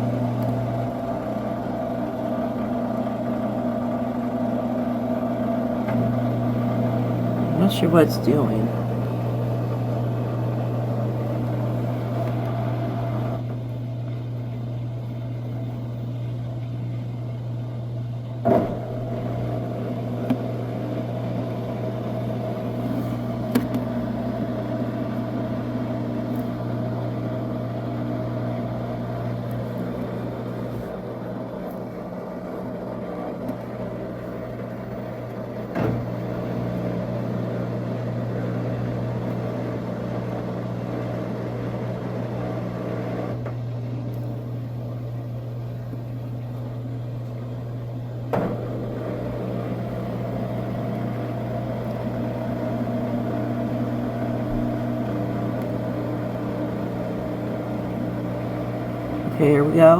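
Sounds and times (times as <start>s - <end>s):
washing machine humming: 0.0s - 59.9s.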